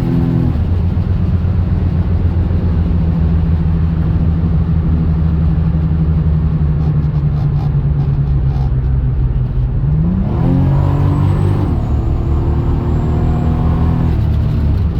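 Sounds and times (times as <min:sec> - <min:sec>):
car engine accelerating: 0:00.0 - 0:14.9
muffled exhaust: 0:00.0 - 0:14.9.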